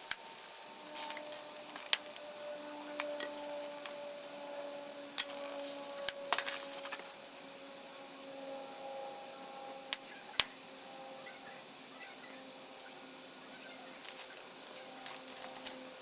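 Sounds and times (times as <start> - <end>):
wood fire crackling and popping: 0.0 - 4.4, 5.1 - 7.4.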